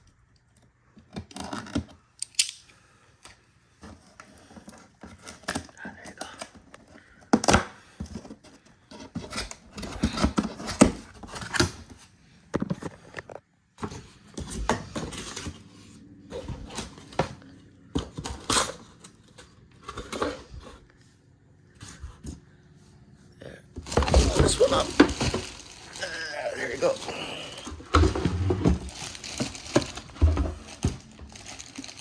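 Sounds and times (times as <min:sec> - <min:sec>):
packaging rustling: 0:23.8 - 0:32.0.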